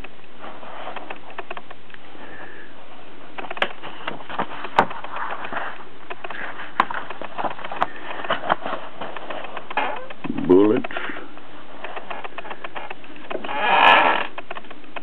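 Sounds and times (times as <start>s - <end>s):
paper pages rustling: 3.4s - 15.0s.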